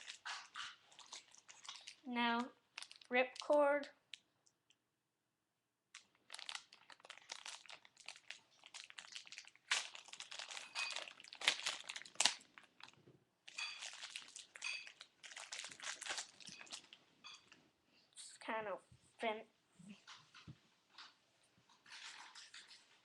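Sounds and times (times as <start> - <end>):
plastic wrapping crinkling: 0.0 - 4.3, 5.9 - 17.6, 20.1 - 23.0.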